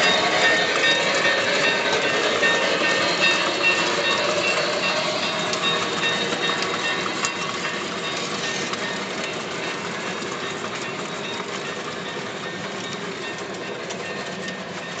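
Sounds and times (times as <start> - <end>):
model train running on track: 0.0 - 15.0.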